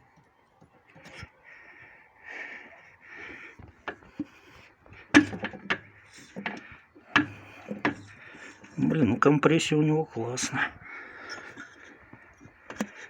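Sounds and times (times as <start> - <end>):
metallic clicks and knocks: 5.1 - 8.2.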